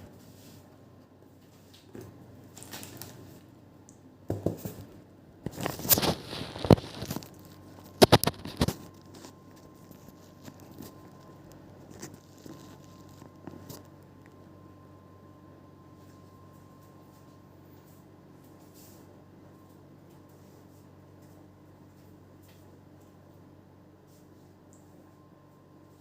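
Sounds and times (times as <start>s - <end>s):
faint steady high hum: 0.0s - 26.0s
rustling and crinkling handling noise: 1.4s - 3.5s, 4.4s - 14.4s.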